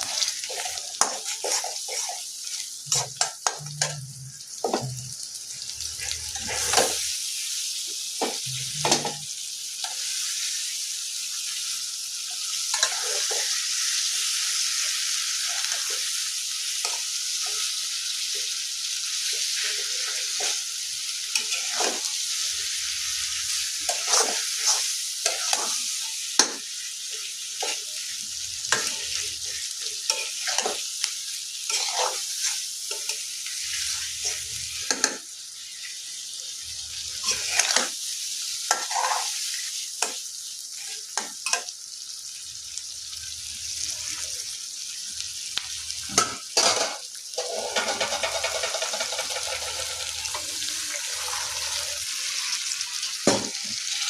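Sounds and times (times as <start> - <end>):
spatula scraping pan: 0.0 - 4.0, 6.0 - 7.0, 12.7 - 13.5, 21.3 - 22.1, 23.8 - 26.6, 30.1 - 30.8, 31.7 - 35.2, 37.2 - 37.9, 38.7 - 39.4, 46.1 - 52.6
shrimp sizzling in hot oil: 0.0 - 54.0.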